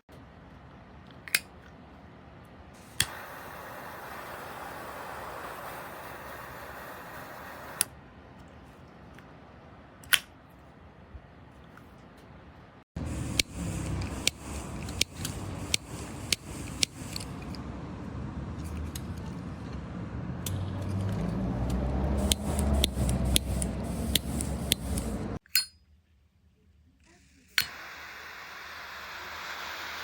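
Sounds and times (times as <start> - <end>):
lighter ignition clicks: 2.9 - 7.9, 13.1 - 17.6, 21.6 - 25.2, 27.6 - 30.0.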